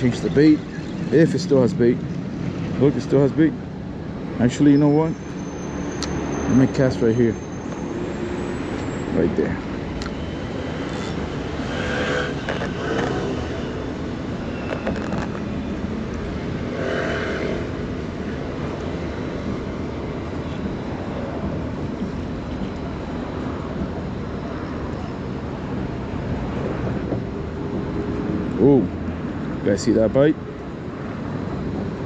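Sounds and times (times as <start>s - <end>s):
road traffic rumble: 0.0s - 32.0s
vehicle passing: 7.9s - 14.3s, 15.8s - 20.3s.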